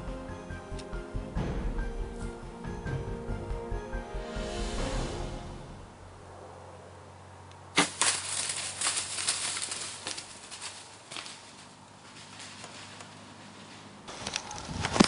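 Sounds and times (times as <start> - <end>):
crackling rustle: 7.5 - 15.0.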